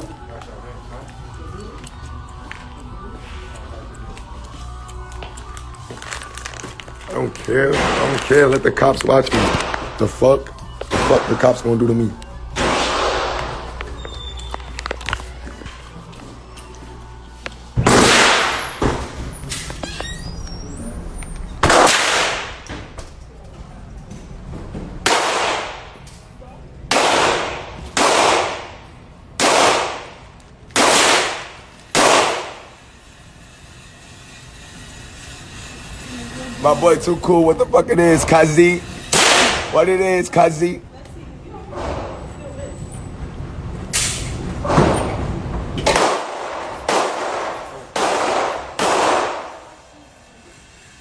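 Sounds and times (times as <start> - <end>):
gunshots with echo: 26.9 - 28.8, 29.4 - 30.2, 30.8 - 32.7, 39.1 - 39.7, 45.9 - 49.6.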